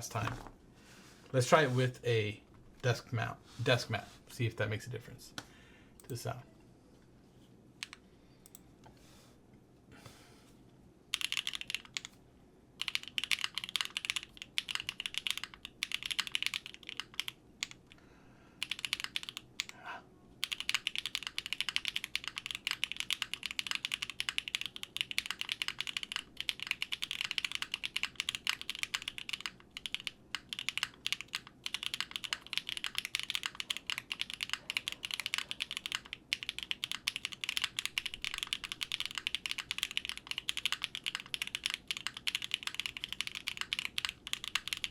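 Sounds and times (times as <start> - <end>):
mechanical keyboard typing: 11.1 - 12.2, 12.8 - 17.8, 18.6 - 19.7, 20.4 - 44.9.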